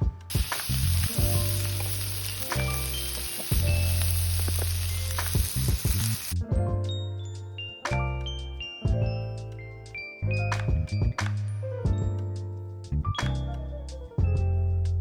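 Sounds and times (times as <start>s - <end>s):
background music: 0.0s - 15.0s
food sizzling in a frying pan: 0.3s - 6.4s.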